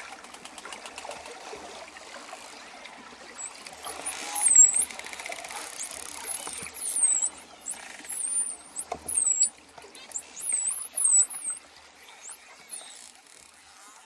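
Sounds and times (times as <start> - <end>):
hiss of moving water: 3.2 - 13.7
dolphins whistling: 3.4 - 14.0.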